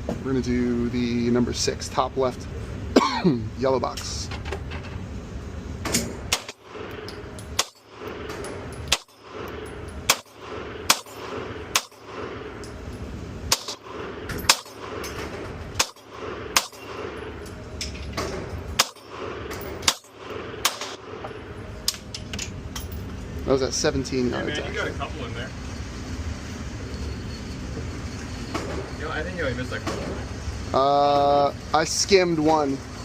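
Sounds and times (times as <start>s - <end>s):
pistol shots indoors: 5.8s - 12.6s, 13.5s - 17.4s, 18.2s - 21.2s.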